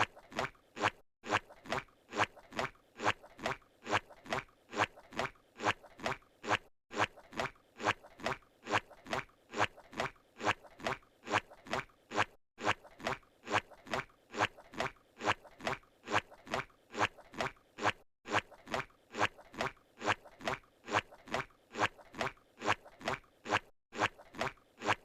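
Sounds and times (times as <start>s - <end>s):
squelching cartoon footsteps: 0.0s - 25.0s.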